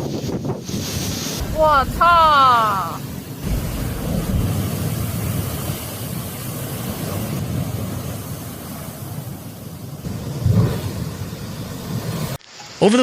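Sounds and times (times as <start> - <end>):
wind buffeting microphone: 0.0 - 12.3
floodwater rushing: 0.1 - 13.0
low rumble: 1.4 - 8.2.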